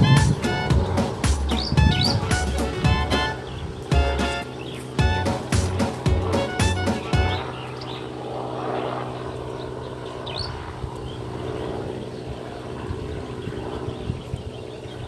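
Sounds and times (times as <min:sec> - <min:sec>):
engine running steadily: 0:00.0 - 0:15.0.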